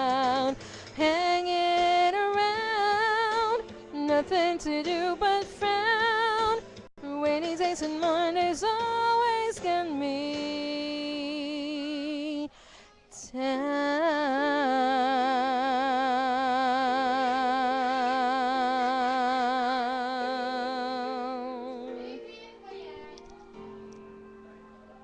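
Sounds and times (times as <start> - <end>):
woman singing long note with vibrato: 13.4 - 23.0.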